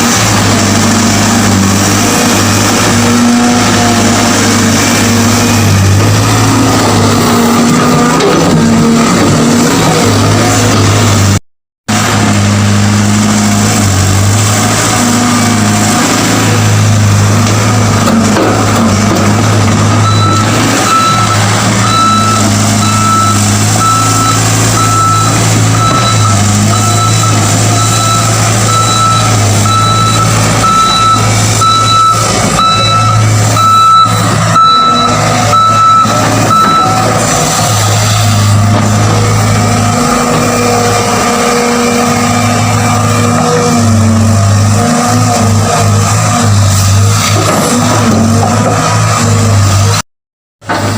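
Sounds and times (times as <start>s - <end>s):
excavator diesel engine running: 0.0s - 50.0s, 50.6s - 50.9s.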